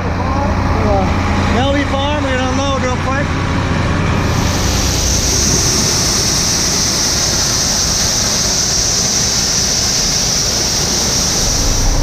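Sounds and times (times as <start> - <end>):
truck engine and road rumble: 0.0 - 12.0
high even hiss: 4.2 - 12.0.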